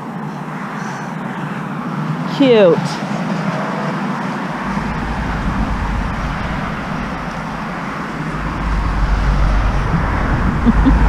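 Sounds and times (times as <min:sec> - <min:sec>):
car road and engine noise: 0:00.0 - 0:11.0
low rumble: 0:04.6 - 0:11.0.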